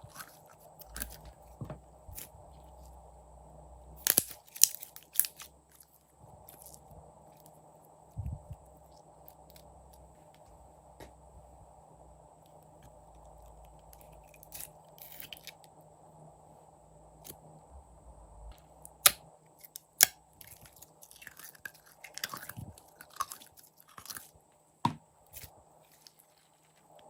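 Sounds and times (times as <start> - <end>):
slime clicking and crackling: 4.0 - 5.9.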